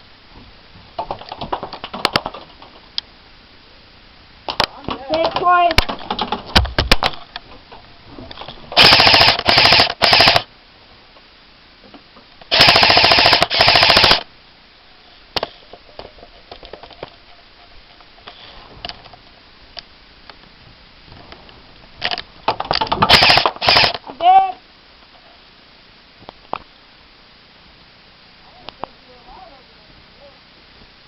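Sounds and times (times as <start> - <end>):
airsoft gun firing bursts: 8.8 - 10.5, 12.5 - 14.3, 23.0 - 24.0.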